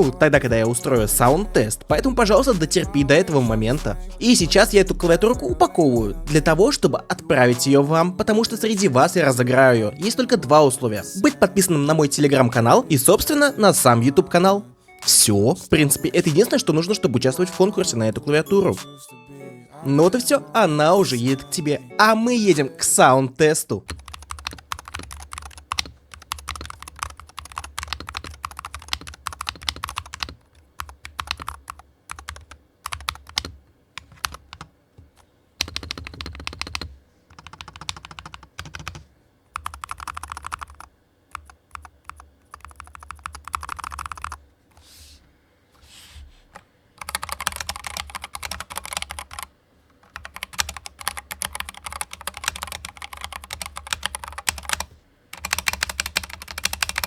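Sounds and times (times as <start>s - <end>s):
rapid keyboard typing: 0.0s - 14.0s, 23.8s - 44.9s, 46.5s - 57.0s.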